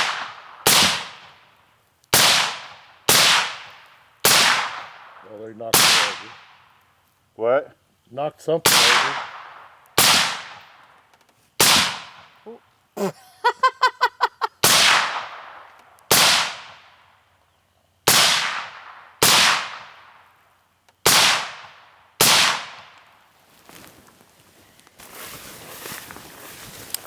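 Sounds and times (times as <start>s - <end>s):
gunshots with echo: 5.7s - 6.4s, 8.7s - 10.6s.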